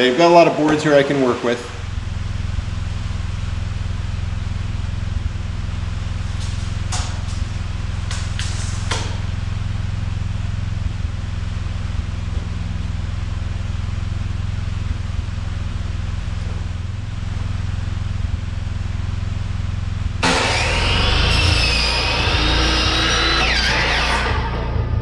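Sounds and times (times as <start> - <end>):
machine humming with hiss: 20.2 - 25.0.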